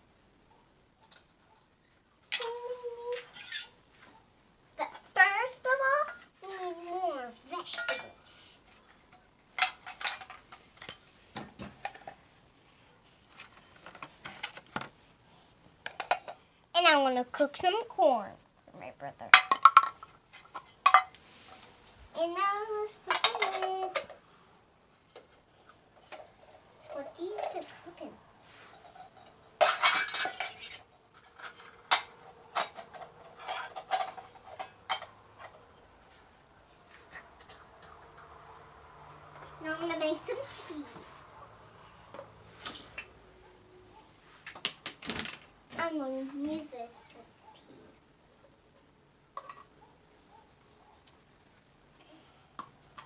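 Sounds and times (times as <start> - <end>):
toy pots clicking and clacking: 2.2 - 3.8, 4.8 - 11.0, 11.6 - 12.3, 15.8 - 18.0, 19.1 - 21.6, 22.2 - 24.2, 25.1 - 35.9, 36.8 - 41.3.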